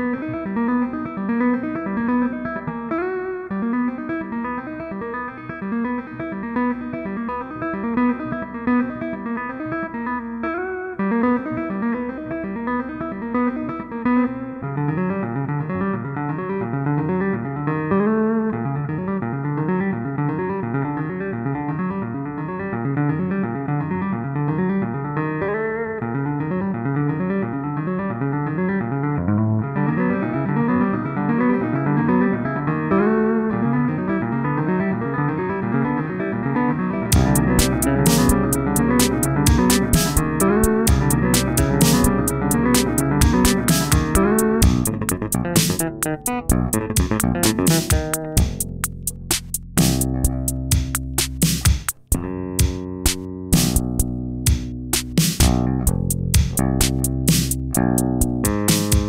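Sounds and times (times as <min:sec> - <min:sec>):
plucked guitar notes: 0:00.0 - 0:59.0
repeating bass pattern: 0:37.1 - 0:59.0.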